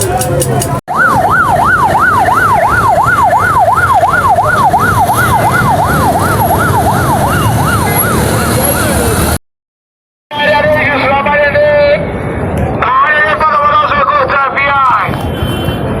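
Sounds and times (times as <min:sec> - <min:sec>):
street traffic noise: 0:00.0 - 0:09.4, 0:10.3 - 0:16.0
siren wailing: 0:00.9 - 0:09.4.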